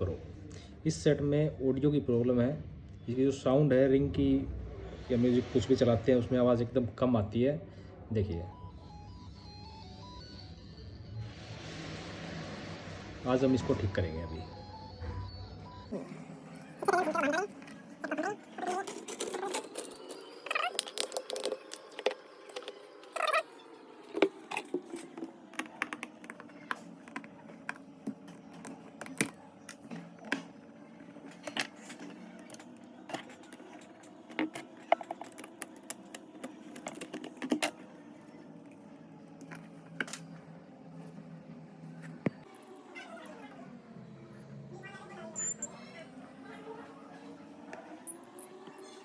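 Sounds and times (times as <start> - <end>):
small tools clicking and tapping: 18.6 - 23.4, 24.1 - 30.5, 31.3 - 37.8.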